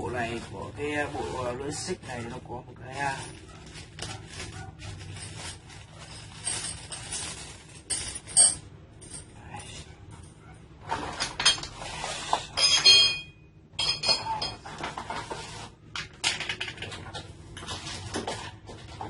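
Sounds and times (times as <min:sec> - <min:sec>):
metal parts clinking and rattling: 0:03.2 - 0:11.8, 0:12.5 - 0:15.1.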